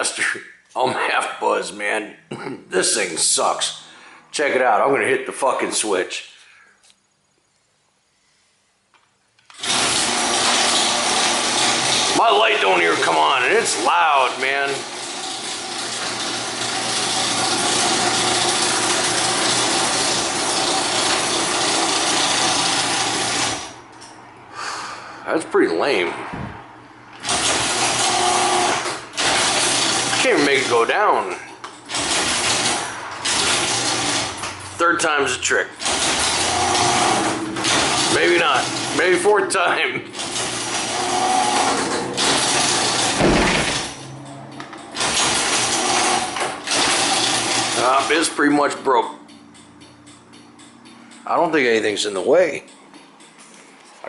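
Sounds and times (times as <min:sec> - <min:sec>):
garage door opener running: 0:09.5 - 0:24.3, 0:27.1 - 0:51.3
low thump: 0:26.3 - 0:26.6, 0:43.2 - 0:43.9.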